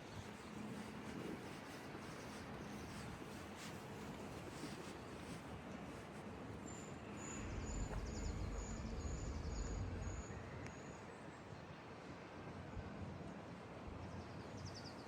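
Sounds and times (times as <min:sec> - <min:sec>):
low rumble: 0:07.2 - 0:10.8.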